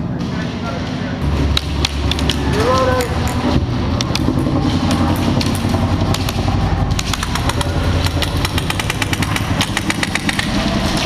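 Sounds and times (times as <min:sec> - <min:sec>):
steady low rumble: 0:00.0 - 0:11.0
airsoft guns firing: 0:05.5 - 0:11.0.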